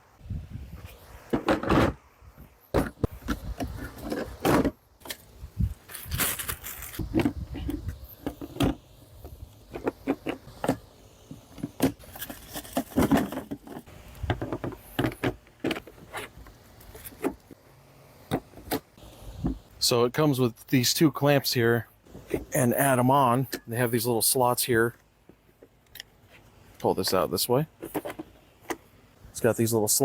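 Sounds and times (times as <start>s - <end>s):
folding table clattering and scraping: 1.3s - 2.0s, 2.7s - 4.8s, 6.0s - 8.8s, 9.7s - 17.6s, 27.8s - 28.8s.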